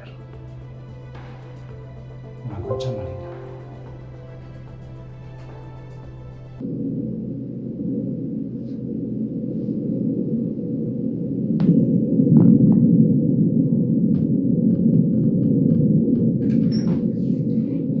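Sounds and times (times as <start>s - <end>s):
muffled wind rumble: 6.6s - 16.5s.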